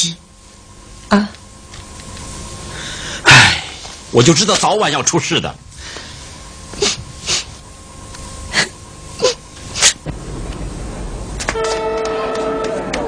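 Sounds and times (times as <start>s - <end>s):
low rumble: 10.0s - 13.0s.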